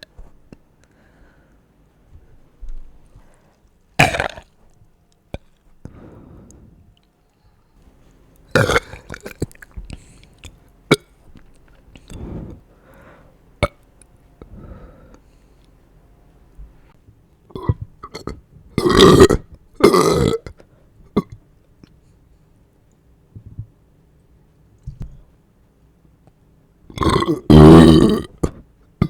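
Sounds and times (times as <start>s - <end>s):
person burping: 4.0s - 4.5s, 8.5s - 9.6s, 13.6s - 13.8s, 17.5s - 20.6s, 26.9s - 28.6s.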